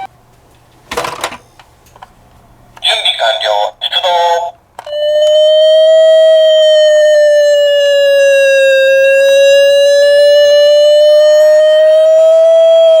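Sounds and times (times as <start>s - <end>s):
toy siren wailing: 4.9s - 13.0s.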